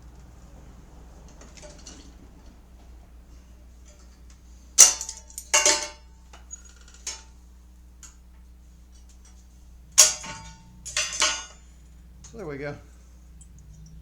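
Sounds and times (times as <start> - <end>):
metal tools clattering: 1.2 - 2.6, 3.8 - 7.4, 8.9 - 14.0
ringing metallic clank: 4.8 - 7.4, 9.0 - 14.0.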